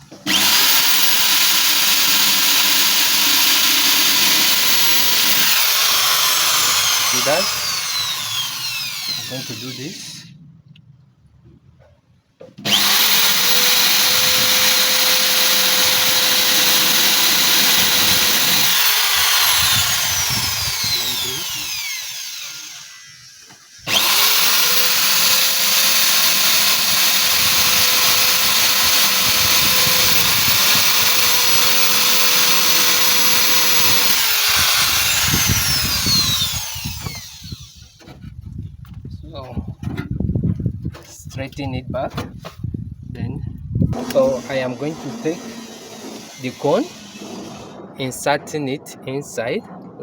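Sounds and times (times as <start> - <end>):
power tool motor whining: 0.2 - 10.3, 12.6 - 38.0, 44.0 - 47.8.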